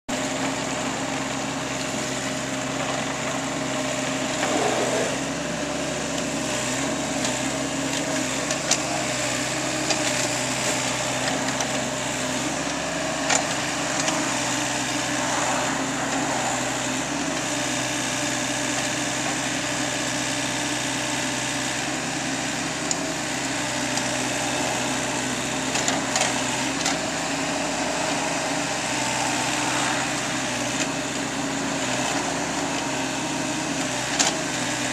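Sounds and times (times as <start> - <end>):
backhoe engine running: 0.1 - 34.9.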